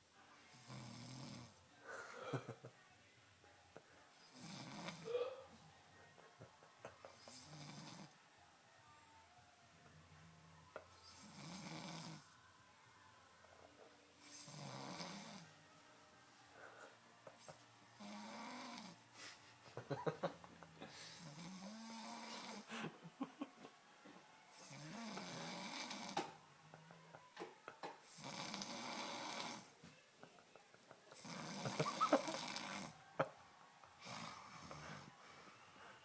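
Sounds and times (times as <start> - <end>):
person snoring: 4.2 - 5.6, 7.1 - 8.2, 11.0 - 12.3, 14.2 - 15.5, 17.4 - 19.0, 20.8 - 22.8, 24.5 - 26.2, 28.0 - 29.7, 31.1 - 33.0, 34.0 - 35.2.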